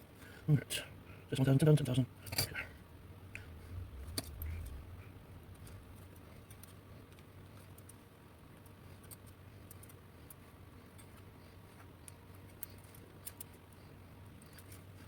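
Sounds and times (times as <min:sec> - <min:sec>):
low steady hum: 0:00.0 - 0:15.0
small parts clicking: 0:04.0 - 0:04.8, 0:05.5 - 0:15.0.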